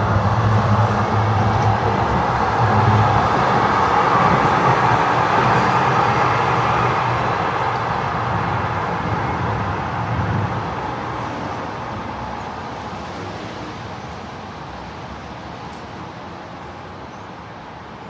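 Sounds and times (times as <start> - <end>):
vehicle passing: 0.0 - 11.6
street traffic: 0.0 - 18.0.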